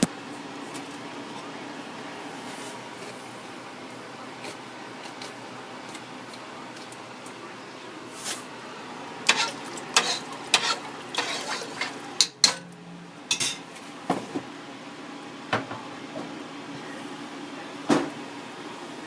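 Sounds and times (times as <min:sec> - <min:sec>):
pots and utensils clinking: 0:09.3 - 0:13.7.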